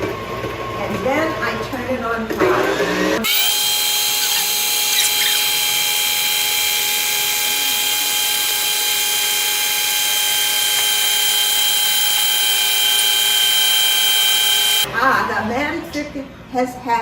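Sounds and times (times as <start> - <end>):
electric mixer motor whine: 2.5 - 14.9.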